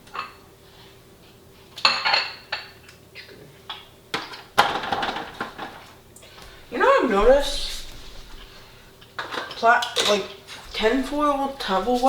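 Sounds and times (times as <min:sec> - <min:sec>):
utensils clattering against dishes: 0:01.8 - 0:02.8, 0:04.2 - 0:05.9, 0:06.8 - 0:12.0
scraping and rattling: 0:10.6 - 0:12.0.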